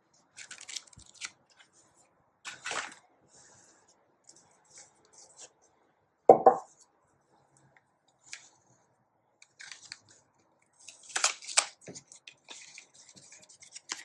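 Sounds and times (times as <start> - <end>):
packaging rustling: 0.4 - 1.7, 2.5 - 3.0, 10.9 - 14.0.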